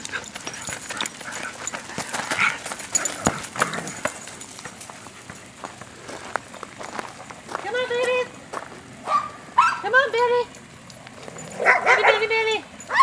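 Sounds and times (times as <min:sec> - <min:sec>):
dogs making excited vocal sounds: 0:00.0 - 0:05.8
knocks and scuffs: 0:00.0 - 0:08.8.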